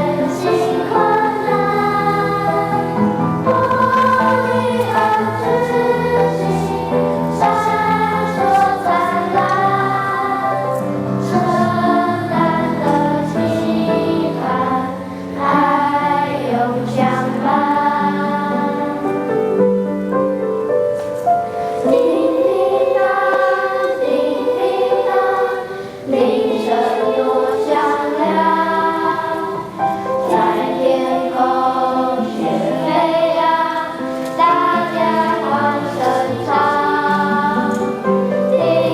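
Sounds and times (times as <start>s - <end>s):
choir singing in parts: 0.0s - 38.9s
singers breathing: 25.6s - 26.1s.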